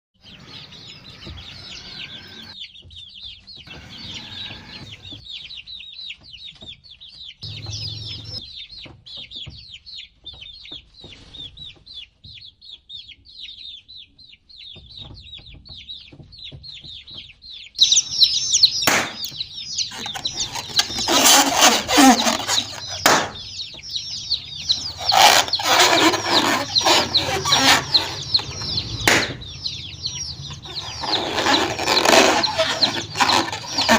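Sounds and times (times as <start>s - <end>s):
baby chicks peeping: 0.2s - 33.9s
loud scuffling: 18.3s - 33.9s.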